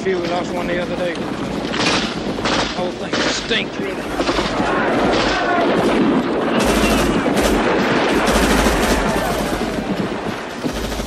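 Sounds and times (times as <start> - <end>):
automatic weapons fire: 1.7 - 10.0.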